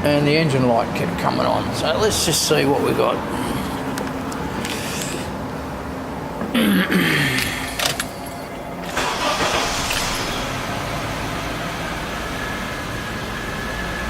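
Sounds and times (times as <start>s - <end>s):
engine starting and idling: 7.6s - 14.0s.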